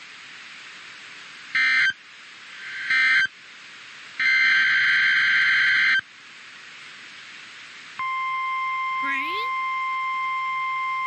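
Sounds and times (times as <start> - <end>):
buzzy digital data bursts: 2.6 - 3.2.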